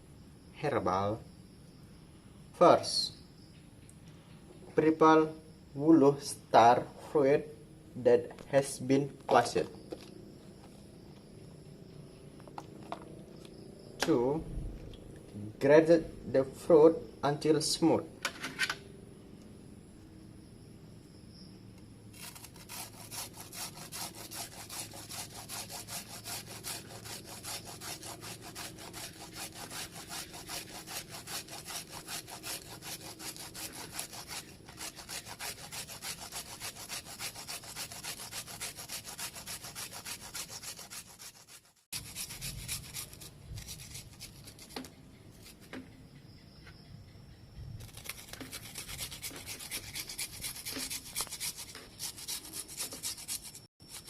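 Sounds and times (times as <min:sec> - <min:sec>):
fruit scraping on a hand grater: 0:22.2 - 0:45.5, 0:47.8 - 0:54.0.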